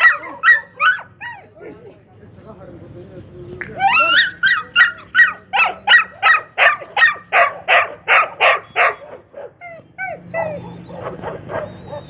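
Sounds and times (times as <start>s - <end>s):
dog barking rapidly: 0.0s - 1.1s, 4.0s - 9.6s, 10.4s - 12.0s
dog yelping: 0.0s - 2.0s, 3.8s - 12.0s.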